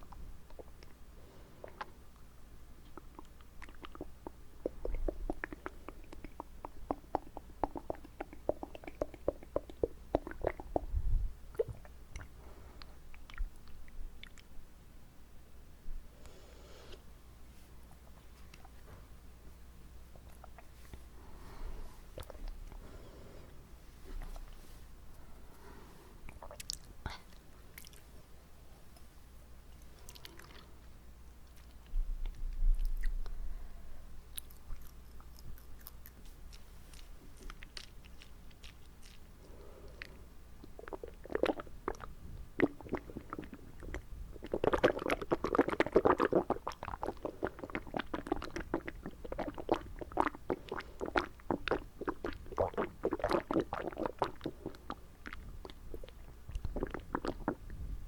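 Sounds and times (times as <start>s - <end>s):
wet mouth sounds: 0.0s - 1.0s, 1.6s - 14.5s, 20.1s - 21.1s, 22.1s - 22.8s, 24.0s - 24.7s, 26.2s - 28.1s, 29.8s - 33.4s, 34.3s - 57.9s.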